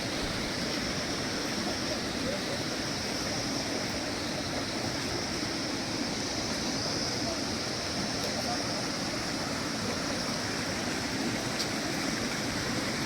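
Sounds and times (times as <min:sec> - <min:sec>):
stream flowing: 0:00.0 - 0:13.0.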